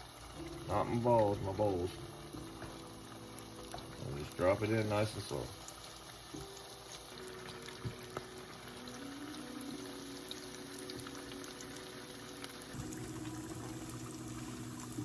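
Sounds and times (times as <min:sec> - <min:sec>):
sausages deep-frying in oil: 0:00.0 - 0:15.0
faint steady hum: 0:08.2 - 0:15.0.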